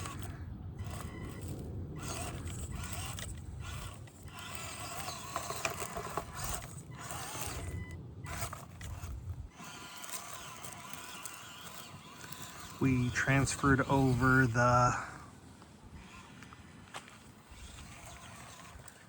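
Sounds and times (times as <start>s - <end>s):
small motor whining and grinding: 0.0s - 19.0s.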